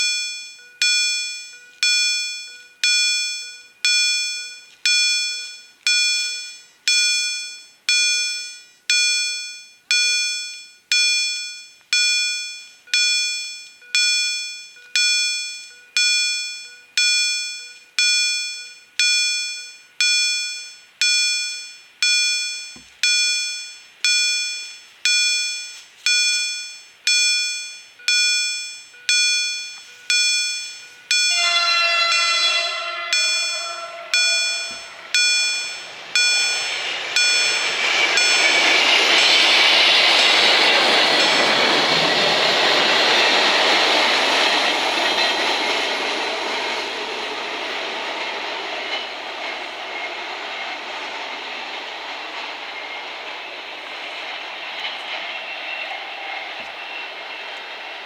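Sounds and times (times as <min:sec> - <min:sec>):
level crossing warning bells: 0:00.0 - 0:58.0
tone falling in pitch: 0:27.3 - 0:43.4.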